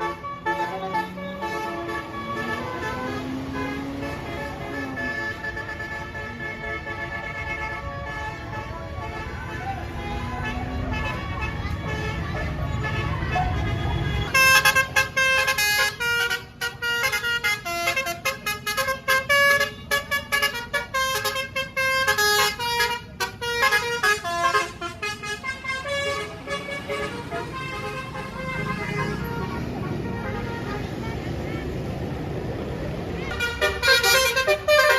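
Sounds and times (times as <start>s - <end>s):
melody air horn playing tune: 33.2s - 34.9s.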